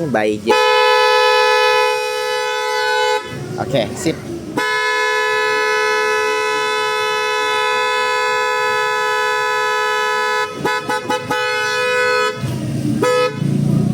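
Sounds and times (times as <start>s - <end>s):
car horn honking: 0.4s - 13.9s.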